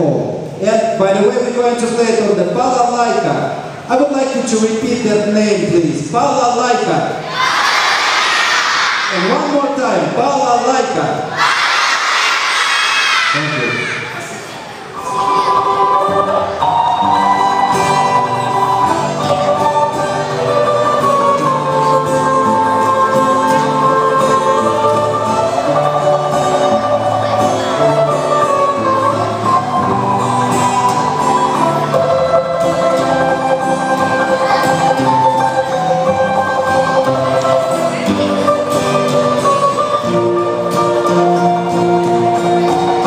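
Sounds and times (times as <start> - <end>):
balalaika playing: 15.0 - 43.0.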